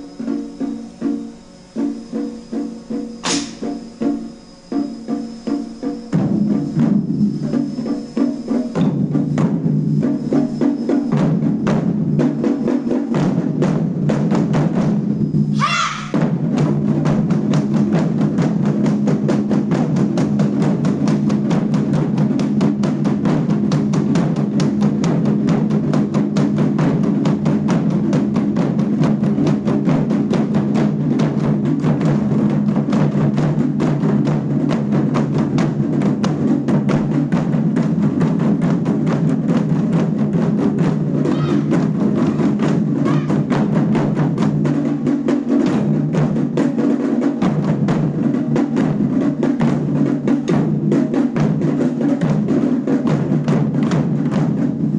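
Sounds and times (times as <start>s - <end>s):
fast loud drumming: 0.0s - 54.9s
short sliding high tone: 15.5s - 16.2s.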